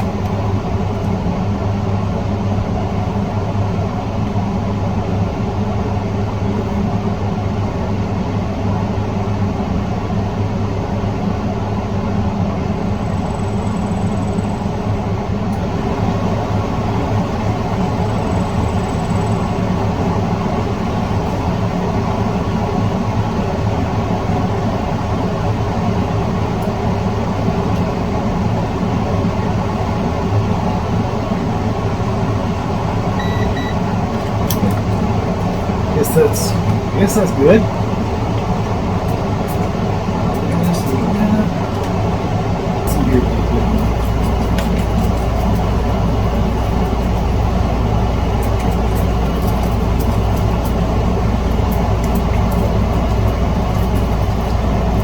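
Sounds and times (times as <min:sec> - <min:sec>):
mechanical drone with low hum: 0:11.1 - 0:55.0.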